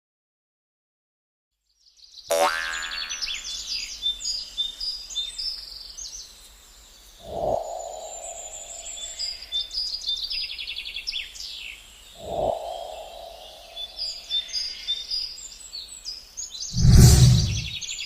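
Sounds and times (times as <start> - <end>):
outdoor background noise: 1.6 - 18.0
birds chirping: 2.3 - 15.6, 16.5 - 18.0
low rising tone: 16.8 - 17.8.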